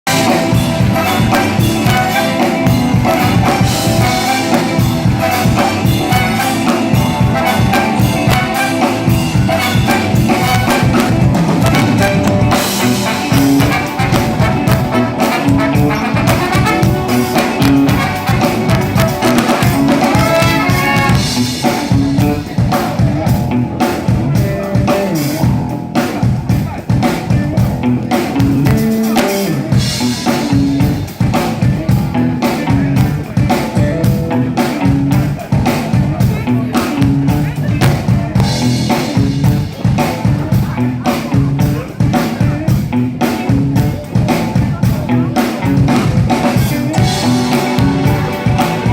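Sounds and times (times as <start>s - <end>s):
drum kit playing: 0.0s - 48.9s
brass horns: 0.1s - 21.9s, 46.6s - 48.9s.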